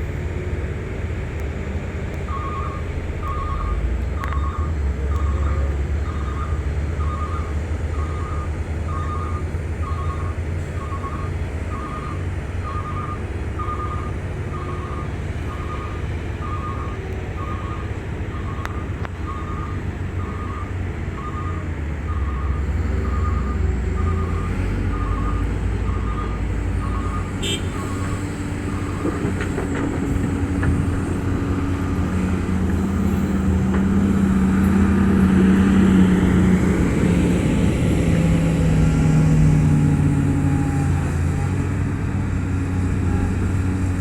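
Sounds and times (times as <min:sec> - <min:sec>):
diesel machinery rumbling: 0:00.0 - 0:44.0
backup alarm beeping: 0:02.3 - 0:28.2.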